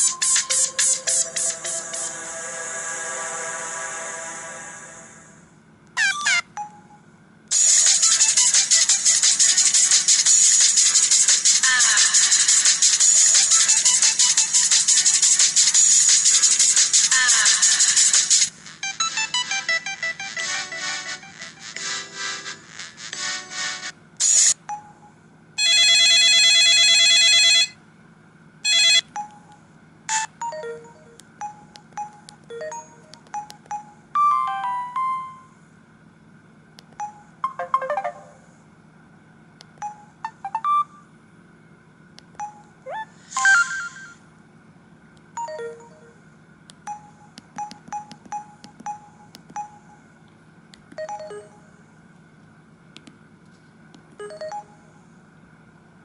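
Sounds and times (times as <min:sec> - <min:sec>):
loud buzzy phone tone: 0:18.7 - 0:25.0, 0:25.6 - 0:27.8, 0:28.6 - 0:29.3, 0:40.0 - 0:41.1
electronic ringtone melody: 0:18.8 - 0:22.6, 0:24.7 - 0:27.7, 0:28.7 - 0:29.5, 0:30.1 - 0:35.5, 0:37.0 - 0:38.4, 0:39.8 - 0:41.0, 0:45.4 - 0:46.2, 0:51.0 - 0:51.8, 0:54.2 - 0:54.9.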